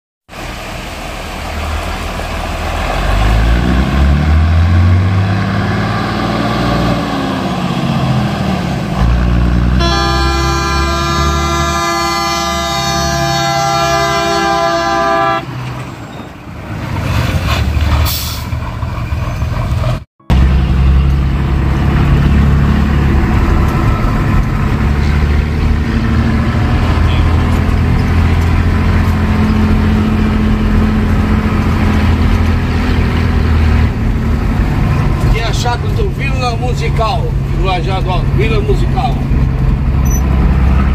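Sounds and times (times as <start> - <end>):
truck engine rumbling: 0.3 - 40.9
horn sounding a held chord: 9.8 - 15.5.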